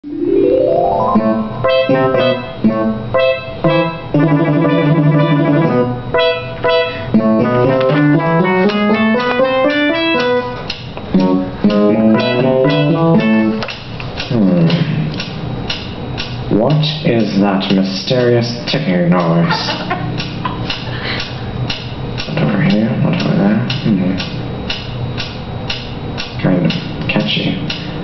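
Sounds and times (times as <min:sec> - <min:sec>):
plucked and keyboard instrumental music: 0:00.0 - 0:14.9.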